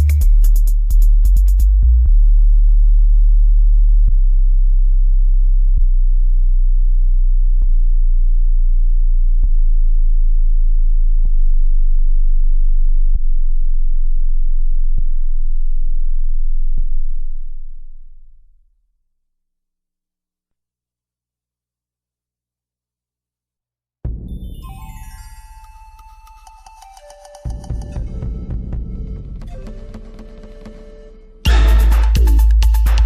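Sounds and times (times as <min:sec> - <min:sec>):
deep sub-bass test tone: 0:00.0 - 0:18.5.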